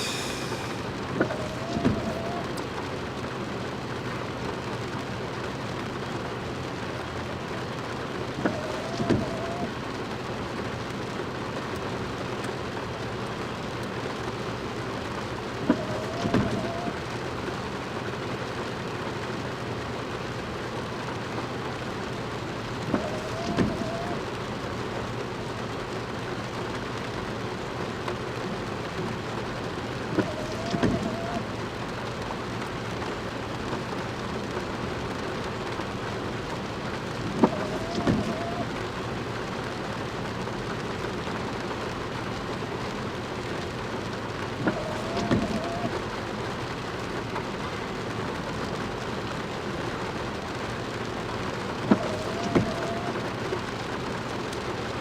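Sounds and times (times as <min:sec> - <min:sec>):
heavy rain: 0:00.0 - 0:55.0
click with squeak and knocks: 0:30.2 - 0:31.4, 0:37.4 - 0:38.6, 0:51.9 - 0:53.1.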